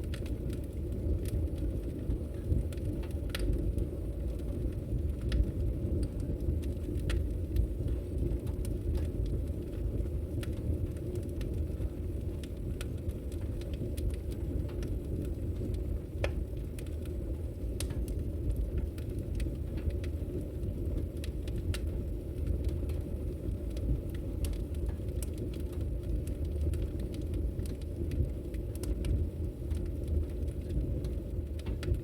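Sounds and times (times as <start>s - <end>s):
fire crackling and popping: 0.0s - 32.0s
fire roaring: 0.0s - 32.0s.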